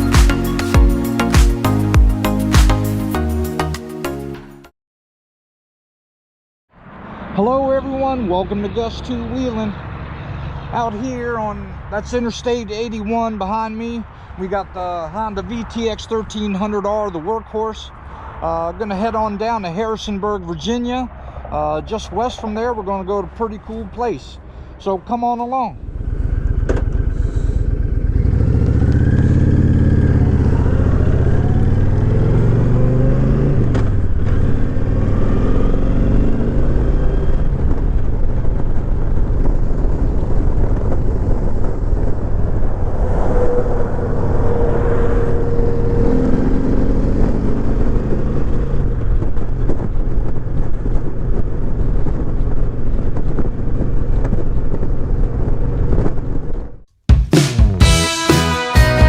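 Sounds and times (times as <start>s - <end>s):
motorcycle engine running: 25.8s - 42.3s.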